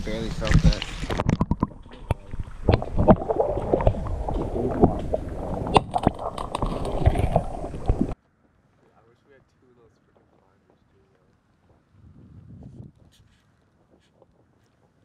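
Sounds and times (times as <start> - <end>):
water sloshing and gurgling: 0.0 - 8.2.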